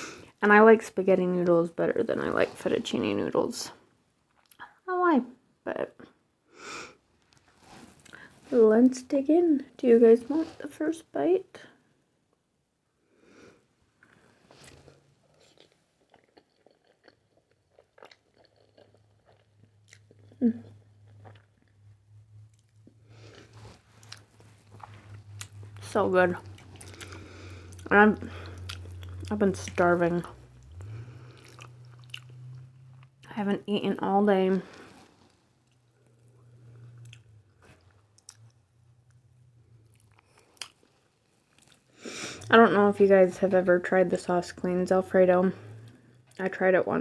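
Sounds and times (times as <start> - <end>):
low steady hum: 0.0 - 47.0
close chewing with wet mouth clicks: 14.6 - 29.8, 30.5 - 33.2, 35.6 - 39.2.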